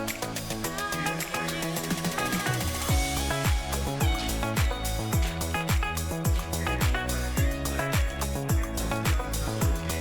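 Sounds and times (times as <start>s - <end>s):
hi-hat: 0.0s - 10.0s
electronic bass drum hits: 2.9s - 9.9s.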